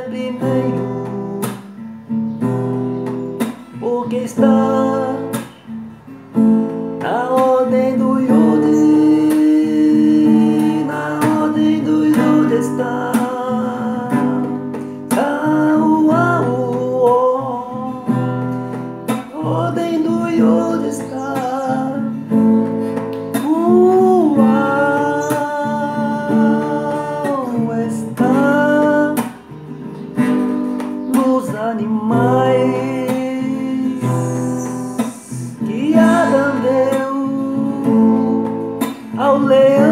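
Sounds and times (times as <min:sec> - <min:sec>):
strummed acoustic guitar: 0:00.0 - 0:39.9
person singing long held notes: 0:23.4 - 0:29.3, 0:31.2 - 0:39.9.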